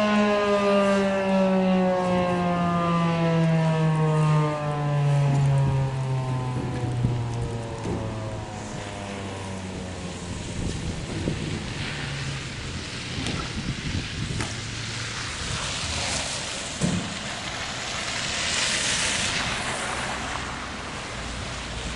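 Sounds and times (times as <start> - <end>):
siren winding down: 0.0 - 12.6
steady rushing noise: 6.3 - 21.9
crunches in icy grass: 10.1 - 20.5.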